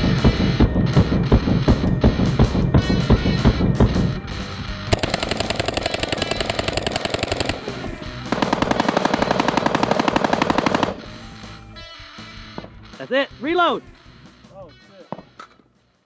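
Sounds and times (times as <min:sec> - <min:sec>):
rapid rifle shots: 0:04.9 - 0:11.3.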